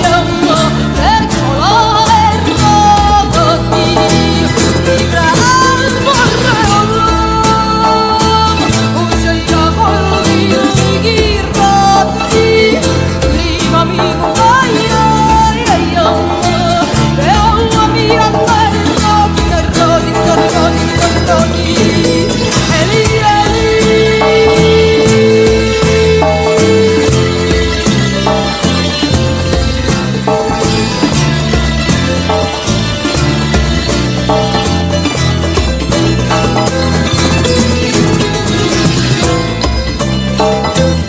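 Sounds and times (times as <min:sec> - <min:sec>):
woman singing: 0:00.0 - 0:29.6
band with bass and plucked strings: 0:00.0 - 0:41.0.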